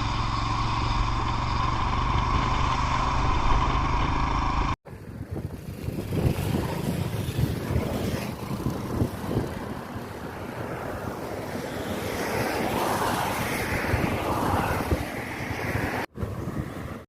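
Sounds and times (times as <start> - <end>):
wind buffeting microphone: 4.9 - 17.0.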